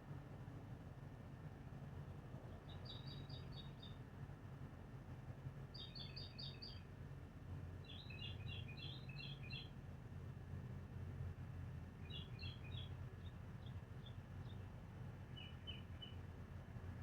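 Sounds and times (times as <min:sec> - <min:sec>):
low steady hum: 0:00.0 - 0:17.0
small bird chirping: 0:02.5 - 0:04.0, 0:05.7 - 0:06.9, 0:07.8 - 0:09.8, 0:12.0 - 0:16.2.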